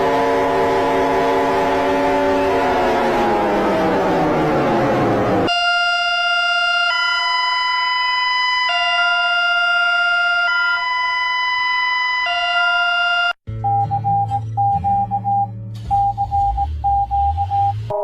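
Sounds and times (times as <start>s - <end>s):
alternating alarm buzzing tone: 0.0s - 13.4s
falling siren tone: 0.0s - 13.4s.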